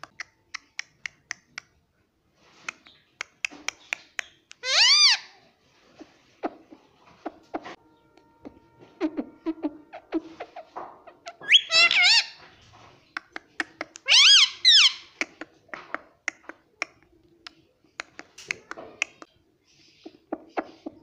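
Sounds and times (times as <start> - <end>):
parrot calling: 4.6 - 5.4, 8.4 - 12.5, 13.2 - 15.6.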